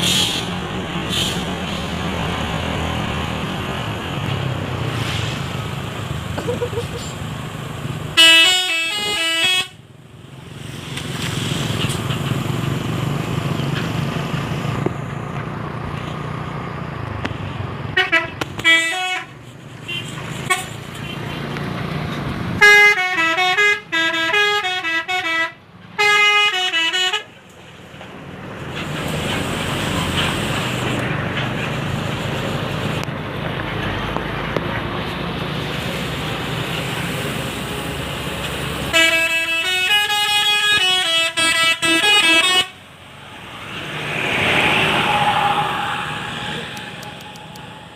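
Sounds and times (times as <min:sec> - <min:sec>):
bus engine: 0:00.0 - 0:47.9
road traffic: 0:00.0 - 0:47.9
bus horn playing melodic tunes: 0:08.2 - 0:09.8, 0:18.0 - 0:20.7, 0:22.6 - 0:27.3, 0:38.9 - 0:42.8.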